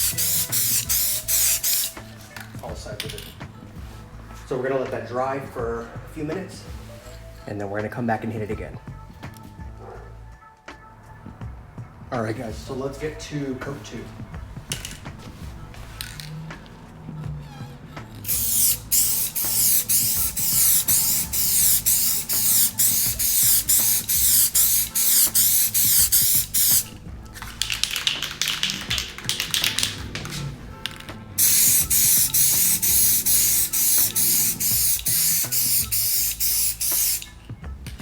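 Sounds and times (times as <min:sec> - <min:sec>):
aerosol can spraying: 0:00.0 - 0:03.3, 0:18.2 - 0:30.5, 0:31.4 - 0:37.4.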